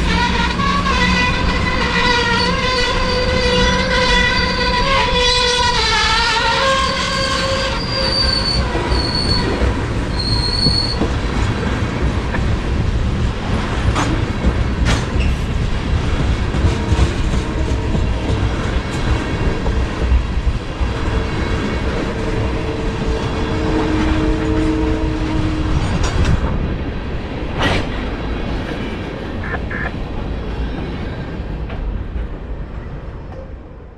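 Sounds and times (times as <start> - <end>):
train horn blast: 0.0 - 9.2, 22.2 - 25.8
freight cars rumbling: 0.0 - 33.9.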